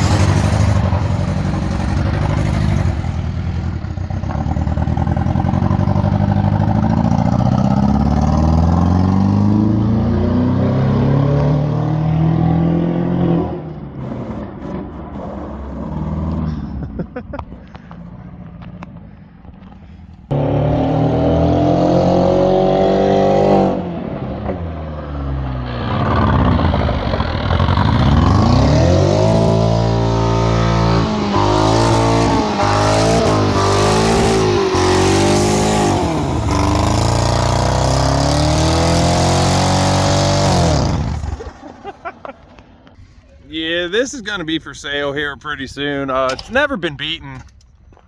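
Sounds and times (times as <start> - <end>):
car engine revving hard: 4.8 - 16.6, 20.3 - 24.6, 25.7 - 41.6.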